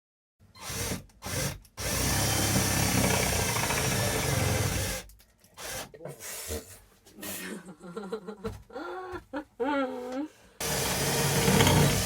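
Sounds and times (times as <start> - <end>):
power drill driving screw into wood: 0.6 - 5.9, 10.6 - 12.0.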